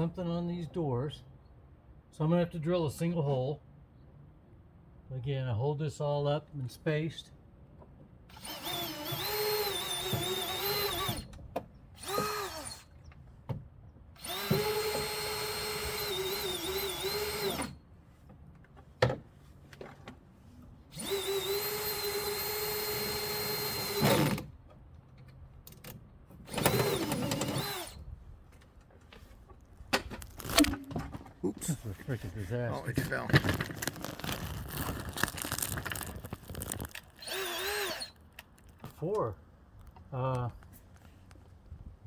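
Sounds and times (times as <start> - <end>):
power drill whine: 8.3 - 11.3, 12.0 - 13.0, 14.2 - 17.8, 20.9 - 24.5, 26.5 - 28.0, 37.2 - 38.2.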